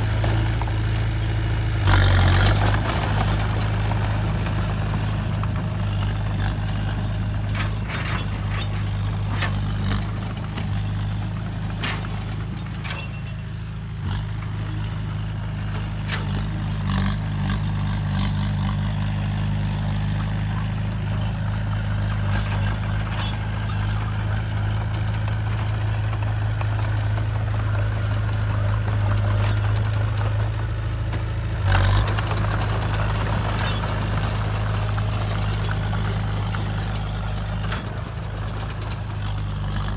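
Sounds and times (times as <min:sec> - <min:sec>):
heavy diesel engine running: 0:00.0 - 0:39.9
knocks and clanks: 0:02.4 - 0:13.5.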